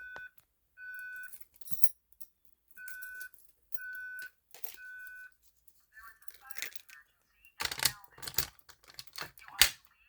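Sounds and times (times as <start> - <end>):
fire alarm beeps: 0.0 - 1.3, 2.8 - 5.4.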